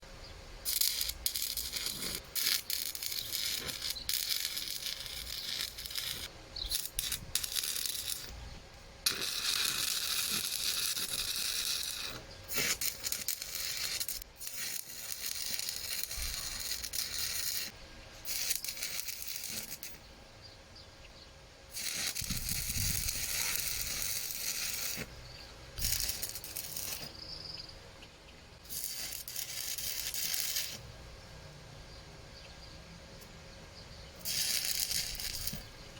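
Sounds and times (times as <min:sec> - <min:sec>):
welding arc crackling: 0:00.6 - 0:20.0, 0:21.7 - 0:25.1, 0:25.8 - 0:27.2, 0:28.6 - 0:30.9, 0:34.2 - 0:35.8.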